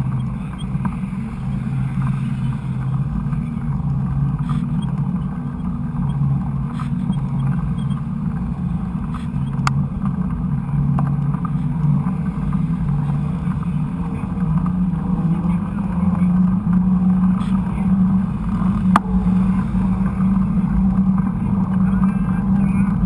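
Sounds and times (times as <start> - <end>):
bike clicks and rattles: 0.0 - 15.3
wind and riding noise: 0.0 - 23.0.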